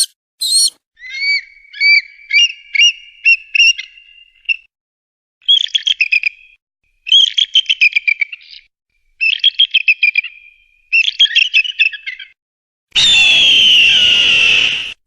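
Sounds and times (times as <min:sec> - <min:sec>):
eagle calling: 0:00.0 - 0:04.6.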